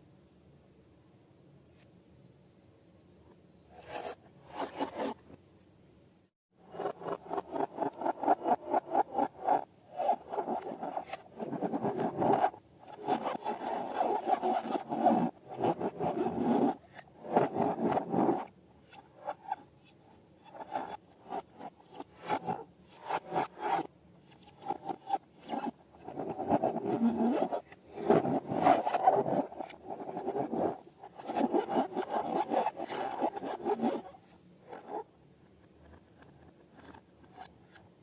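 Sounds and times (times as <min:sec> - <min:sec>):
rubber balloons rubbed by hand: 0:06.7 - 0:18.5, 0:24.6 - 0:35.1.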